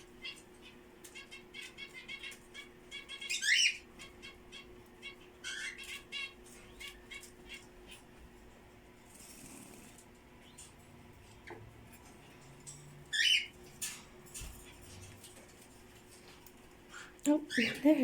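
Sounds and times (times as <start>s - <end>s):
parrots chattering: 0.0s - 8.2s, 11.4s - 18.0s
parrot squawk: 1.2s - 7.7s.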